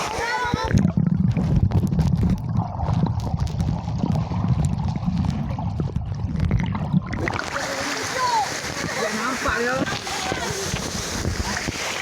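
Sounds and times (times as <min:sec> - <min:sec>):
waterfall rushing: 0:07.2 - 0:12.0.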